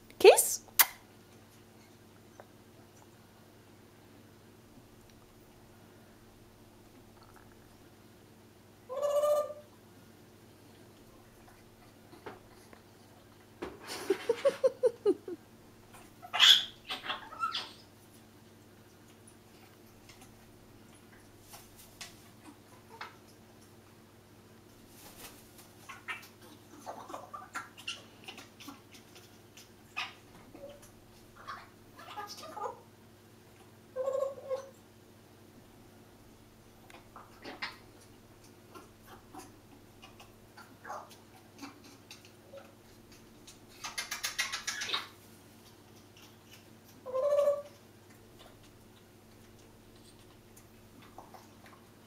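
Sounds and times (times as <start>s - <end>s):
parrot squeaks and chirps: 16.2s - 17.8s, 43.8s - 45.2s.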